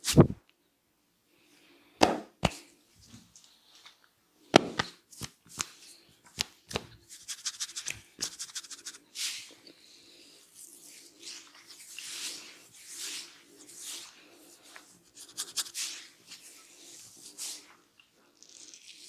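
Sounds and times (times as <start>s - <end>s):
hands rubbing: 2.0s - 2.6s, 4.6s - 9.2s, 15.2s - 16.0s
hands slapping and tapping: 2.0s - 2.7s, 4.6s - 9.0s.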